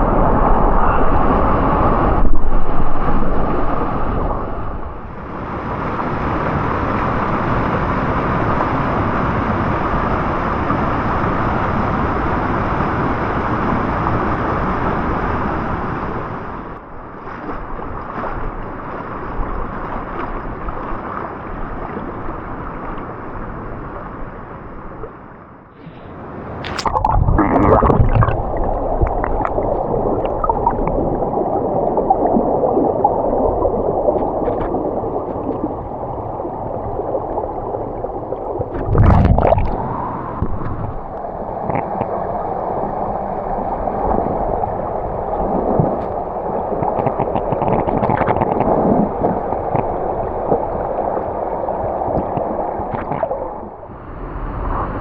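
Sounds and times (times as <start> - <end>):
creek water gurgling and rushing: 0.0 - 25.0, 26.2 - 55.0.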